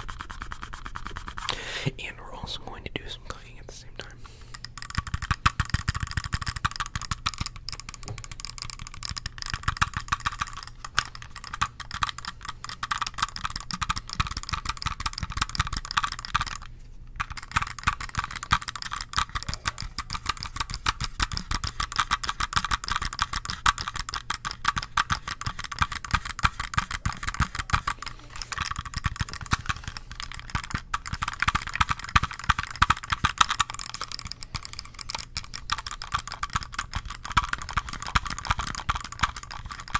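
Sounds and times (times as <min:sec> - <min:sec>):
fingertips tapping plastic mouse: 0:04.5 - 0:39.9.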